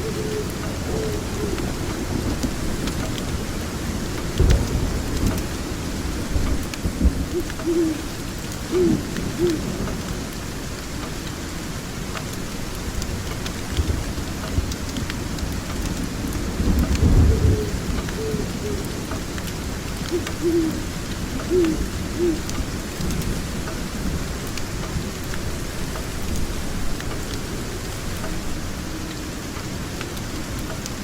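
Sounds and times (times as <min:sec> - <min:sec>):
owl hooting: 0:00.0 - 0:02.0, 0:07.3 - 0:09.8, 0:17.3 - 0:19.1, 0:20.1 - 0:22.6
steady rain: 0:00.0 - 0:31.0
thunder rolling: 0:16.5 - 0:23.5.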